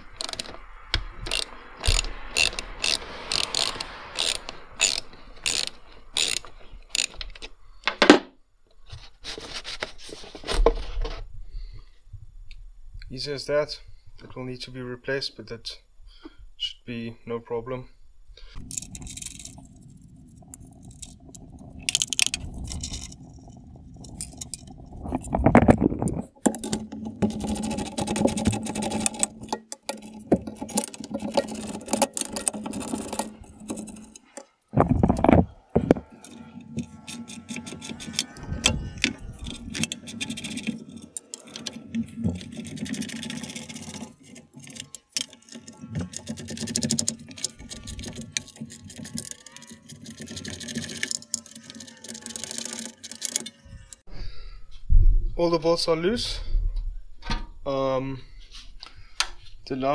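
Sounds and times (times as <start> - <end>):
wrenches clinking on metal: 1.3 - 7.4
scraping clatters: 18.6 - 54.0.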